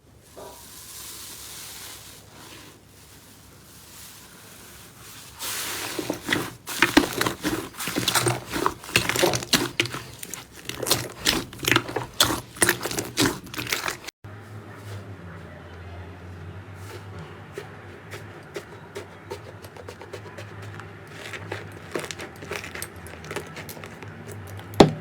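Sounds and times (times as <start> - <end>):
faint hiss: 0.0 - 5.9
slime crackling and popping: 6.2 - 14.1.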